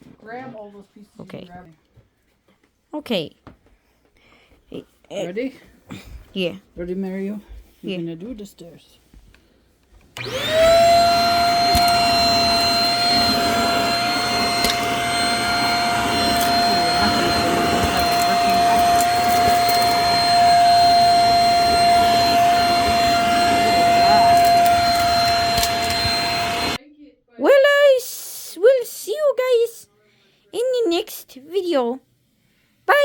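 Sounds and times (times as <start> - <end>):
vacuum cleaner motor whining: 10.0 - 26.8.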